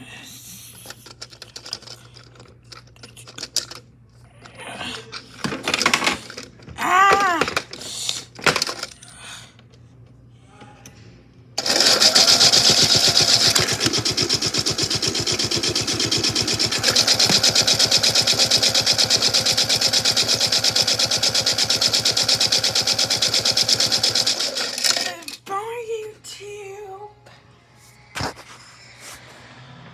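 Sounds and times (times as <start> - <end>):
toy washing machine clicking: 0.8 - 3.8, 5.3 - 7.8, 8.4 - 9.0, 11.6 - 25.4
small motor spinning rattling drum: 11.6 - 25.4.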